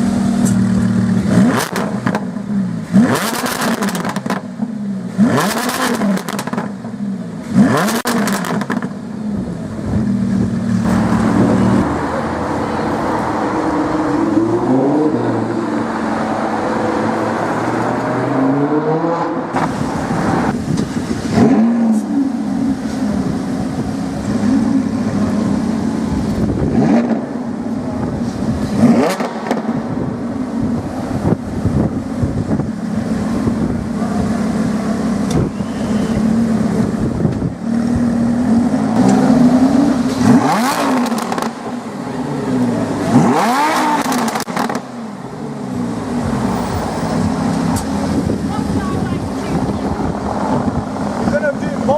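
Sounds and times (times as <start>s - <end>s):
sports car engine revving: 0.0s - 51.9s
exhaust cracks: 36.6s - 41.7s.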